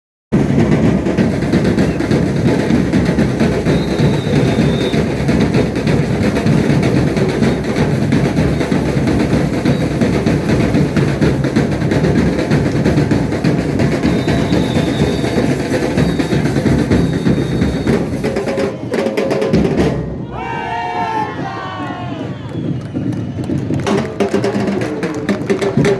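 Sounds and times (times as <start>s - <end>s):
bass drums: 0.3s - 18.8s
drum section playing: 0.3s - 25.9s.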